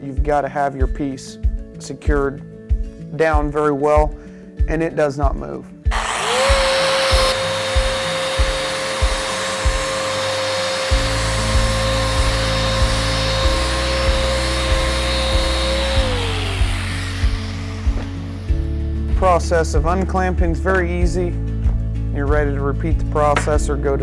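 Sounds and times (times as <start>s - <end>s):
background music with beat: 0.0s - 24.0s
sander whining: 5.9s - 20.1s.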